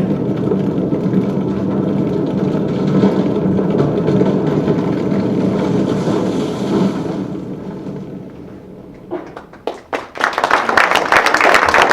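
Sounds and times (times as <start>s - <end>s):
wind and rain storm: 0.0s - 10.0s
faint knocks: 1.7s - 10.0s.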